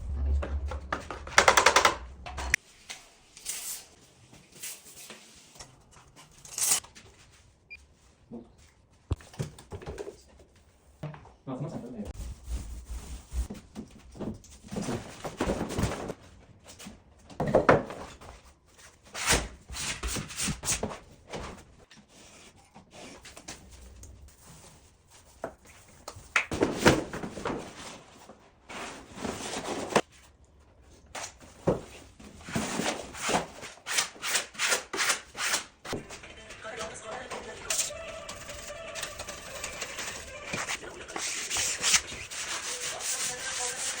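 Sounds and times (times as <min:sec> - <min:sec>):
wallpaper rubbing and brushing: 0:12.2 - 0:13.5, 0:39.6 - 0:44.0.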